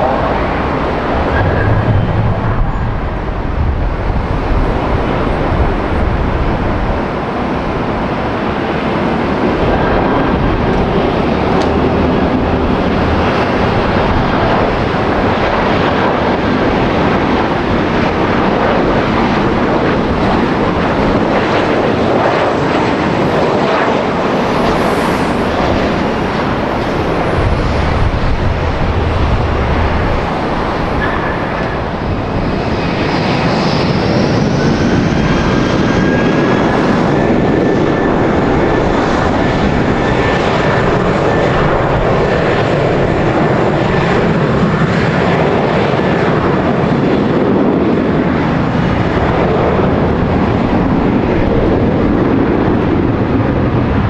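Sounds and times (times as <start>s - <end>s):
jet engines running: 0.0s - 54.0s
wind rumble on microphone: 0.0s - 54.0s.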